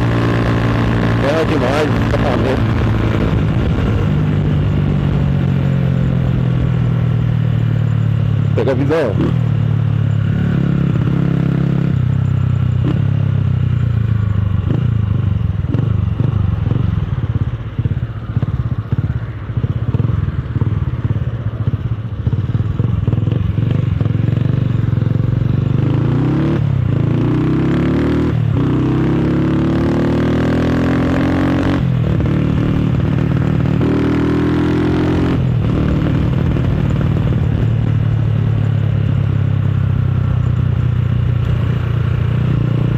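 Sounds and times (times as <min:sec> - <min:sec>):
motorcycle accelerating: 0:00.0 - 0:42.9.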